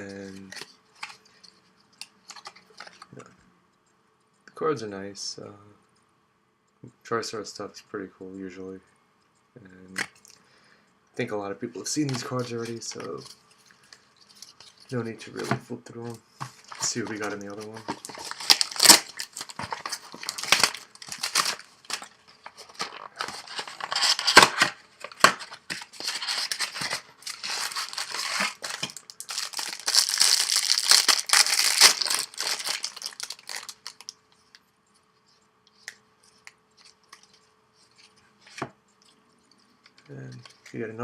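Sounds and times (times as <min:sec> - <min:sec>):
packaging tearing and crinkling: 0:16.6 - 0:34.1.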